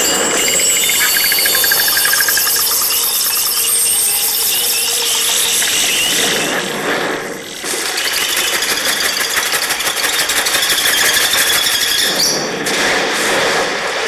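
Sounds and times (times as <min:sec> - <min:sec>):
thin high tone: 0:00.0 - 0:04.8.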